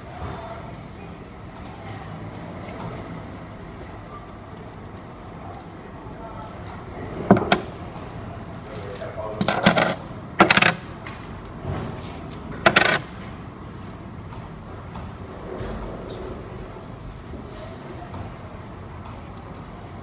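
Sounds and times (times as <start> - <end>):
coins clattering into coin slot: 6.4 - 13.2.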